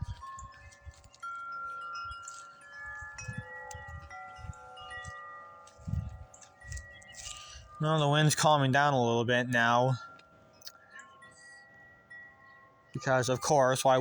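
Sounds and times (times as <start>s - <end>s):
wind rumble on microphone: 0.0s - 7.8s
tubular wind chimes ringing: 0.0s - 14.0s.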